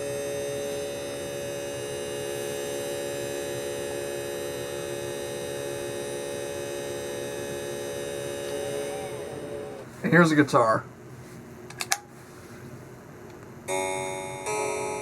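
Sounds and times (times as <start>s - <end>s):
electronic organ tone: 0.0s - 10.4s.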